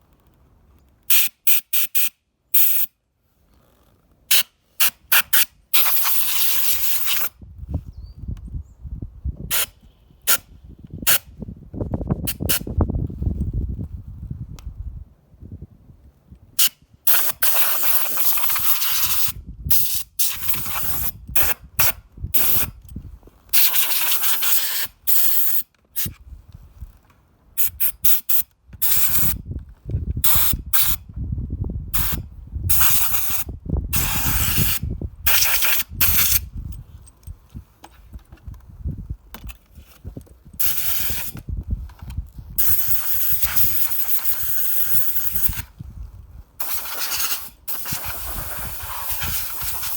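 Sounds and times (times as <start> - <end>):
compressed air hissing bursts: 1.1 - 2.9, 4.3 - 7.3, 9.5 - 10.5, 16.6 - 22.7, 23.5 - 26.1, 27.6 - 29.4, 32.0 - 36.5, 40.6 - 41.4, 42.6 - 45.7, 46.6 - 49.9.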